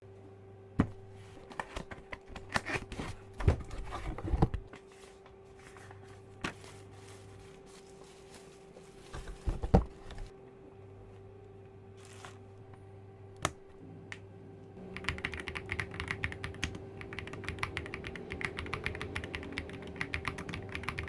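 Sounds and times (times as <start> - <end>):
faint steady hum: 0.0 - 21.0
mechanical keyboard keystrokes: 15.0 - 21.0.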